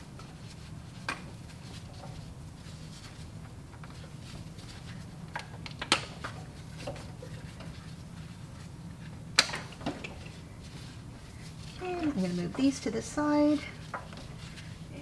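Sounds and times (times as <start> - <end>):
low steady hum: 6.4 - 15.0.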